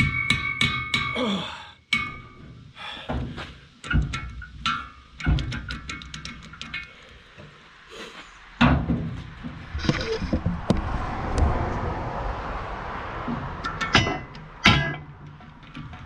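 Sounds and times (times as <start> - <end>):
metal bar knocking on bolts: 0.0 - 1.2, 3.8 - 6.9
metal scraping: 6.6 - 12.1.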